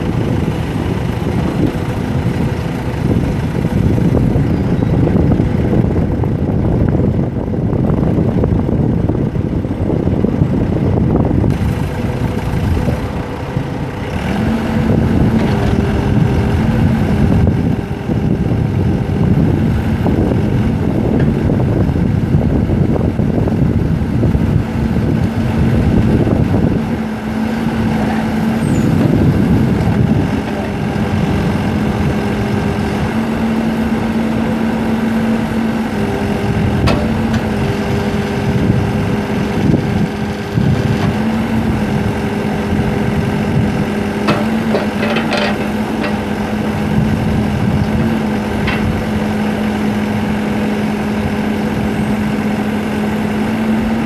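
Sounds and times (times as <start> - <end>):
diesel engine running: 0.0 - 54.0
sharp clicks or knocks: 44.3 - 46.2.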